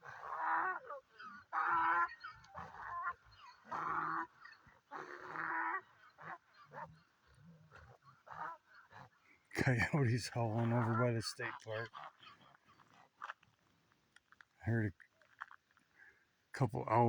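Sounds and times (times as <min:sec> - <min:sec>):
donkeys braying: 0:00.0 - 0:13.7.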